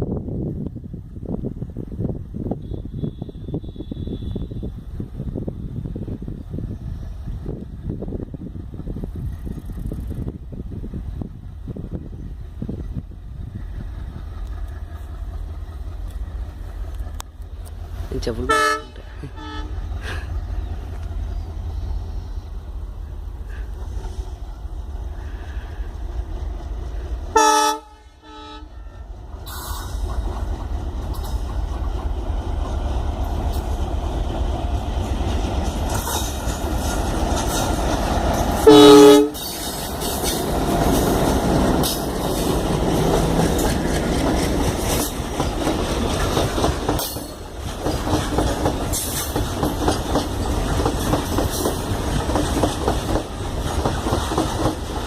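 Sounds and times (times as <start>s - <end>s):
train rumbling over rails: 0.0s - 55.0s
train horn blasts: 2.5s - 4.8s, 18.4s - 19.9s, 27.3s - 29.2s, 38.6s - 39.6s.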